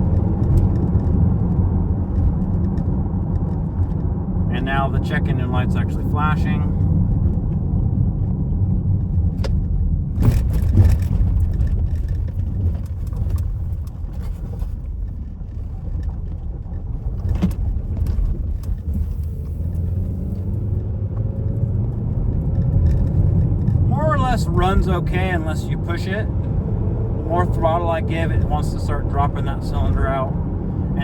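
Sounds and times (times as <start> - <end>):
engine and road rumble: 0.0 - 31.0.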